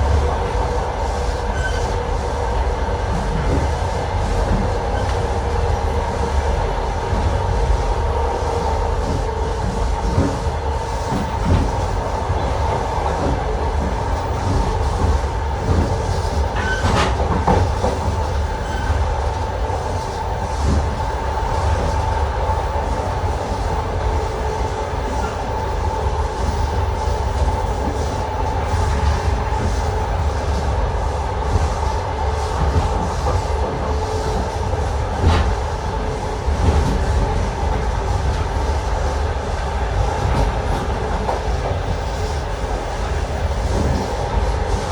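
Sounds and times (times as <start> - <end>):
train carriages rumbling: 0.0 - 44.9
train wheels clacking over rail joints: 8.9 - 22.1, 31.4 - 44.9.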